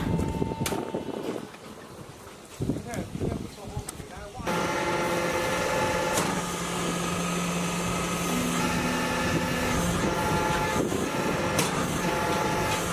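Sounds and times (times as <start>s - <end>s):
machine humming with hiss: 4.5s - 12.9s.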